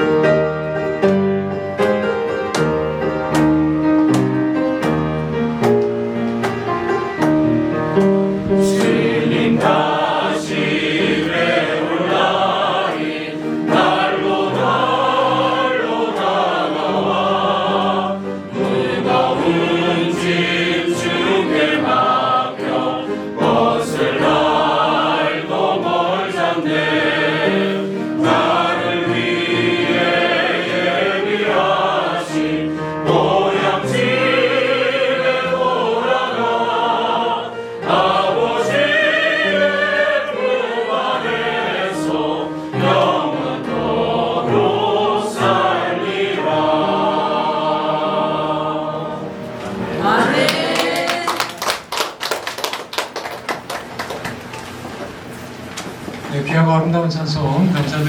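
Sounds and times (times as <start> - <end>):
instrumental accompaniment: 0.0 - 52.1
choir singing a hymn: 6.8 - 51.9.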